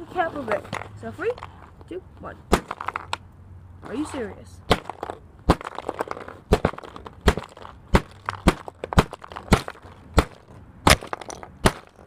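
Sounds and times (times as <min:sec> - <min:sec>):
hammer striking plastic: 0:04.7 - 0:12.0.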